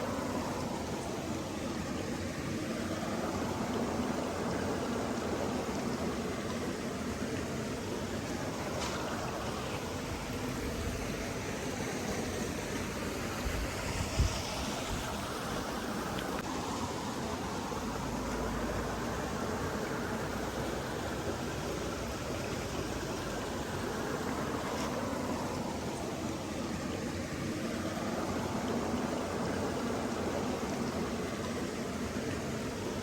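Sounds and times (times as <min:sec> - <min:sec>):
flowing stream: 0:00.0 - 0:33.0.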